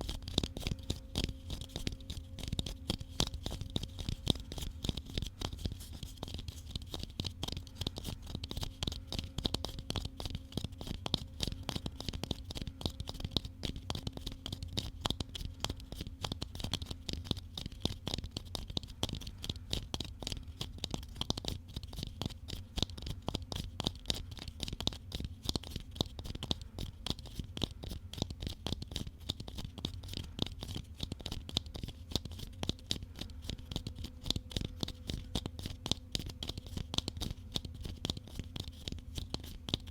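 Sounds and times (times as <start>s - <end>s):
rapid scratchy tapping: 0.0s - 39.9s.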